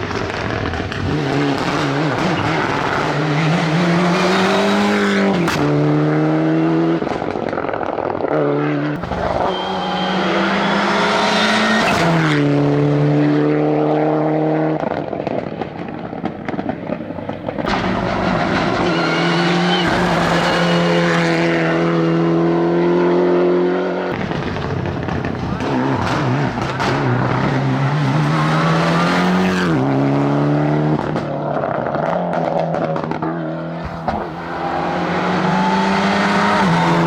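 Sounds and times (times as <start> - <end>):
rally car engine at high revs: 0.0 - 37.0
sharp exhaust cracks: 9.0 - 12.6, 15.7 - 21.0, 33.8 - 37.0.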